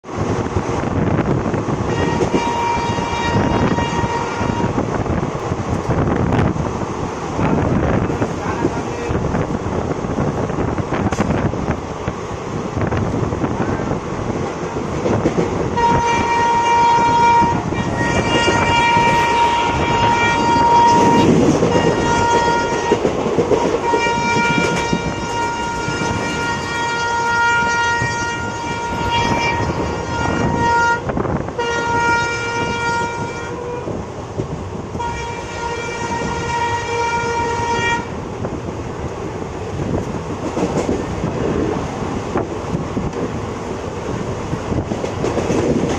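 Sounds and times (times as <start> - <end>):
train rumbling and clattering: 0.0 - 45.9
train horn blasts: 1.9 - 4.8, 15.8 - 34.0, 35.0 - 38.2.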